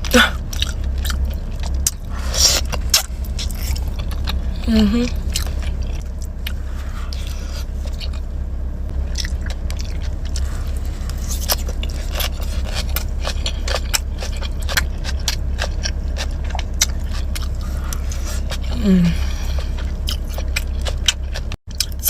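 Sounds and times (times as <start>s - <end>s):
steady low hum: 0.0s - 22.0s
chewing with wet mouth clicks: 0.4s - 4.5s, 5.1s - 8.3s, 9.1s - 18.8s, 19.4s - 22.0s.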